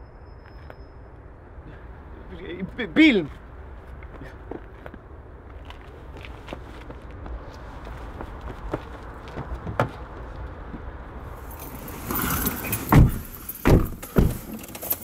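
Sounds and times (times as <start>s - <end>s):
rustle: 11.3s - 13.7s
heavy car door thumps: 12.7s - 14.7s.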